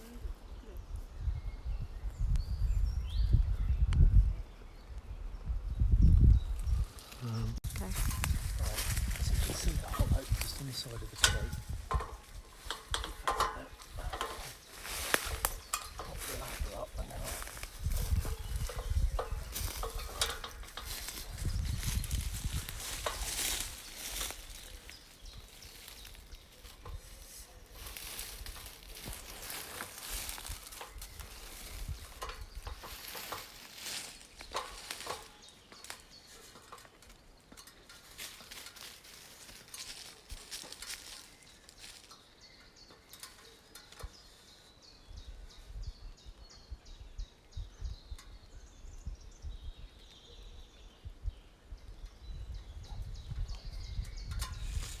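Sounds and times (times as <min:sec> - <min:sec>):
ladder rustling and knocking: 0:08.1 - 0:42.2.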